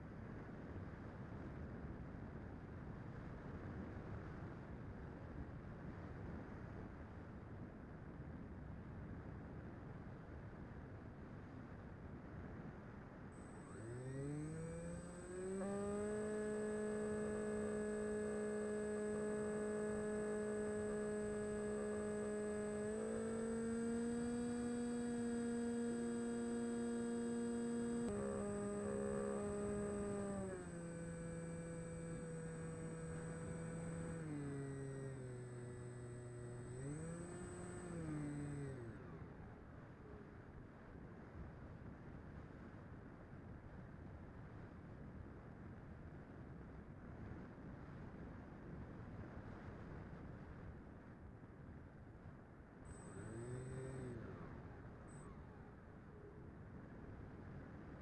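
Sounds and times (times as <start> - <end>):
electric motor and propeller whine: 13.3 - 40.4, 52.9 - 56.4
faint high-pitched whine: 13.3 - 40.8, 52.9 - 58.0.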